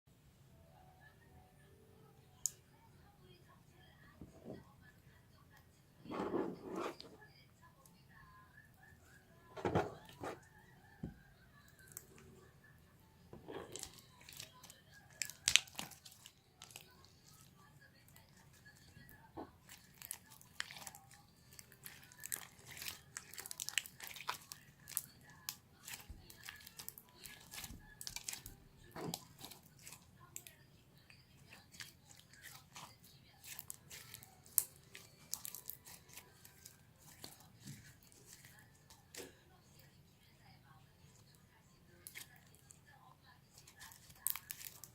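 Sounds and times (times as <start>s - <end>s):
slime crackling and popping: 13.7s - 17.4s, 19.6s - 30.0s, 31.5s - 38.3s, 43.6s - 44.9s.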